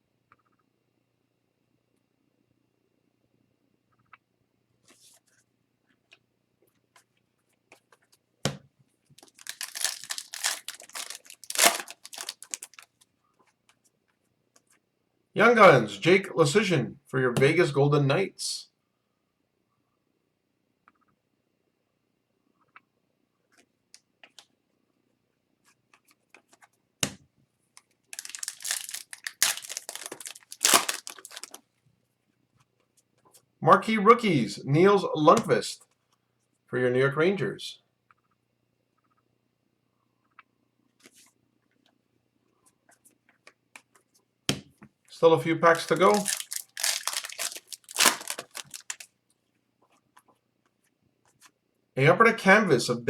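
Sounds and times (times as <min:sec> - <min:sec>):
foil wrapper tearing and crinkling: 0:09.2 - 0:12.9, 0:28.2 - 0:31.6, 0:45.7 - 0:49.1.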